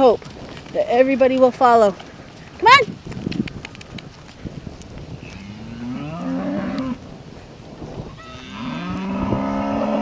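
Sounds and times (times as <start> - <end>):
cows mooing: 5.2 - 7.1, 8.0 - 10.0.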